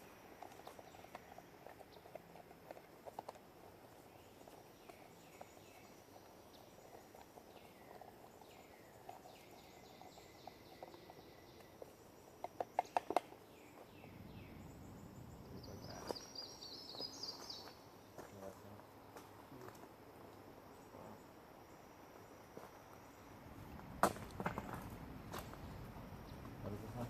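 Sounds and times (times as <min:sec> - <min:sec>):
insects calling: 0:00.0 - 0:27.0
cluster of sharp clicks: 0:12.4 - 0:13.4.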